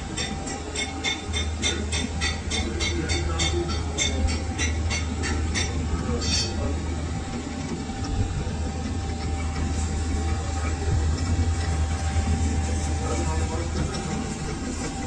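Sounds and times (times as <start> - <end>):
lathe humming: 0.0 - 15.0.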